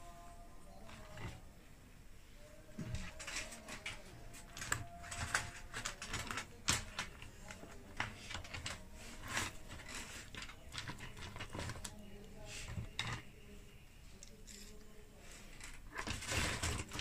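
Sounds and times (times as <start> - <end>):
metal parts clicking and knocking: 2.8 - 12.0, 12.6 - 13.3, 15.5 - 17.0.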